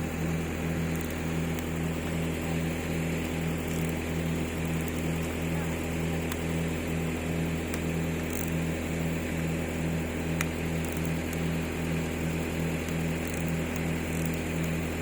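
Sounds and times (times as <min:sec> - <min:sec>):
motor humming with a throb: 0:00.0 - 0:15.0.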